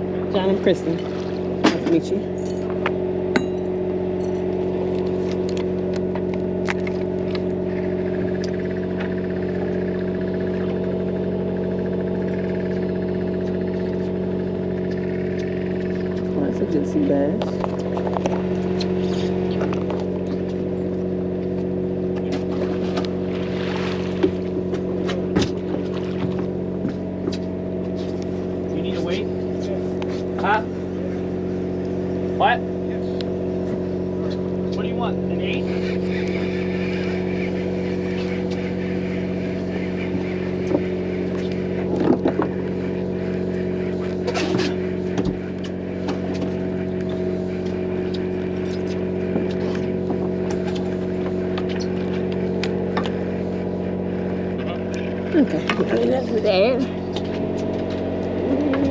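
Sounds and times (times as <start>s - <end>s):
boat engine drone: 0.0s - 58.9s.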